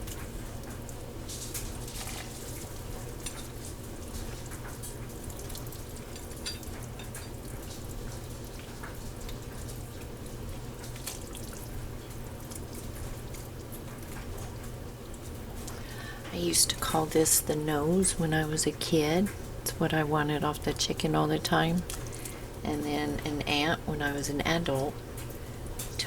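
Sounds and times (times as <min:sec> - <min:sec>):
broth simmering with pops: 0:00.0 - 0:17.7, 0:20.5 - 0:26.0
steady low hum: 0:00.0 - 0:26.0.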